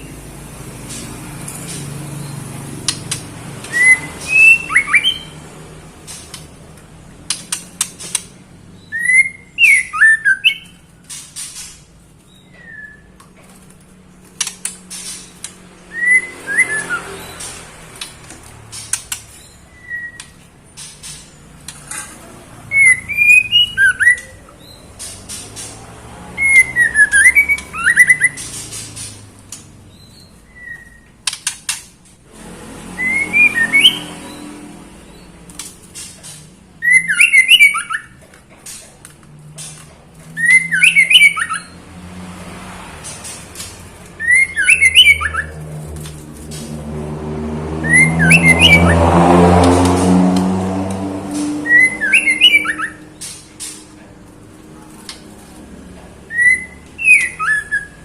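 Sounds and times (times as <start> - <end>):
bird whistling calls: 3.7 - 5.4, 8.8 - 10.8, 15.9 - 17.4, 22.7 - 24.7, 26.4 - 28.6, 33.0 - 34.4, 36.8 - 38.1, 40.4 - 41.8, 44.2 - 45.6, 47.8 - 49.0, 51.6 - 53.2, 56.3 - 58.0.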